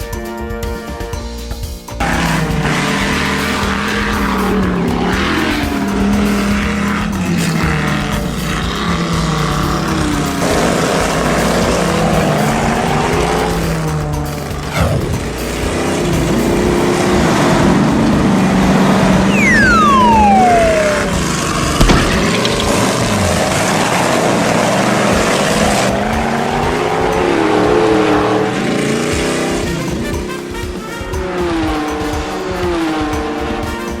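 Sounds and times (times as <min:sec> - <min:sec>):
cartoon engine and tyre noise: 0:02.0 - 0:34.0
falling whistle-like tone: 0:19.0 - 0:23.5.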